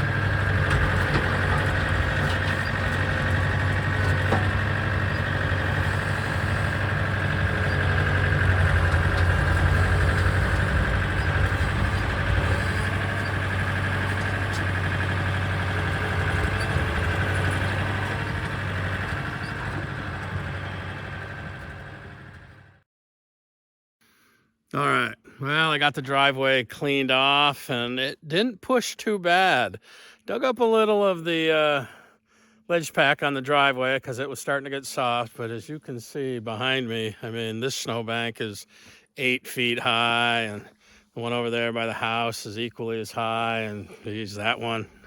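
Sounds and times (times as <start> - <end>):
tractor engine running: 0.0 - 22.8.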